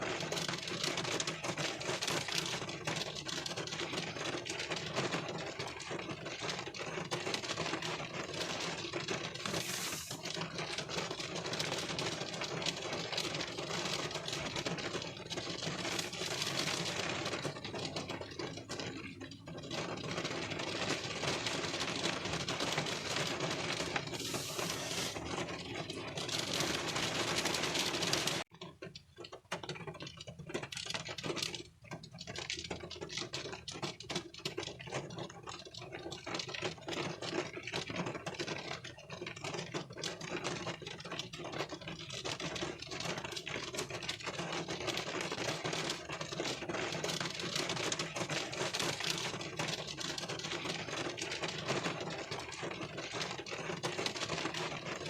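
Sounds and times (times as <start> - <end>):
rain pattering on windshield: 0.0 - 55.0.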